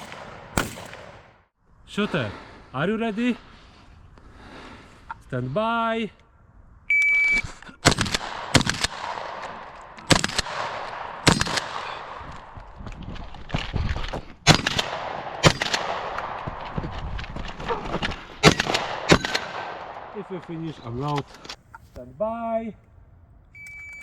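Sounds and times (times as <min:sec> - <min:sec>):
shotgun shots with echo: 0:00.0 - 0:01.4, 0:18.4 - 0:20.2.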